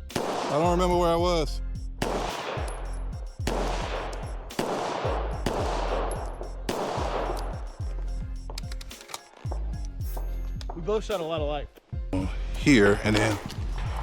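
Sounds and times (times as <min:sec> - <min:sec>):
rifle shots with echo: 0:00.1 - 0:00.8, 0:02.0 - 0:07.9.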